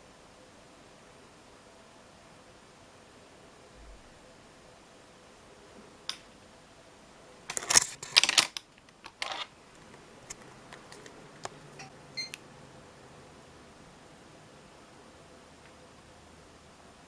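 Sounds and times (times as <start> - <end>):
plastic clicks and clatter: 7.5 - 11.5.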